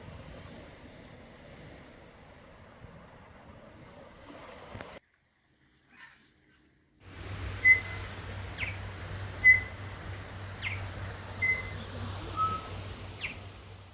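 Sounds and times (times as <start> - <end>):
bird calling with whistled notes: 7.6 - 8.8, 9.4 - 9.8, 10.6 - 13.5.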